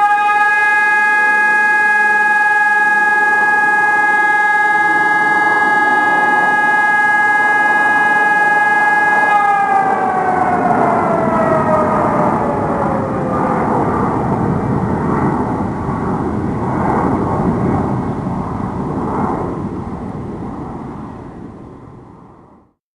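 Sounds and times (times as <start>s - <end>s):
siren winding down: 0.0s - 14.9s
rushing noise: 1.2s - 22.5s.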